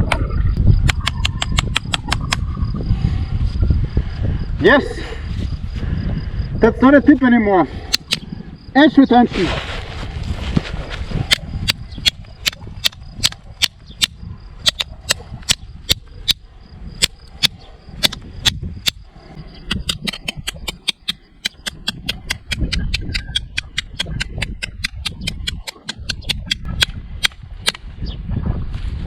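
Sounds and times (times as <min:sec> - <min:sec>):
knife blade striking hard material: 0:19.7 - 0:27.8.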